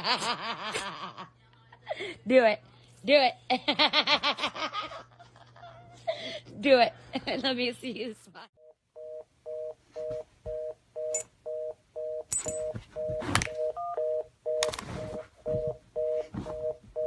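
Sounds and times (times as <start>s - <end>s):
telephone busy signal beeps: 8.6s - 17.0s.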